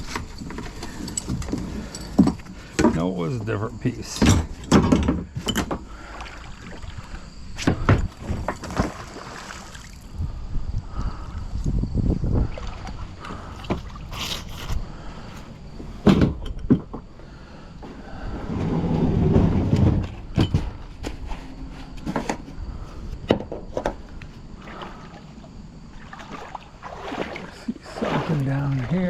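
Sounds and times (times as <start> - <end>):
water splashing: 5.9 - 10.1, 12.3 - 14.5, 24.6 - 29.0.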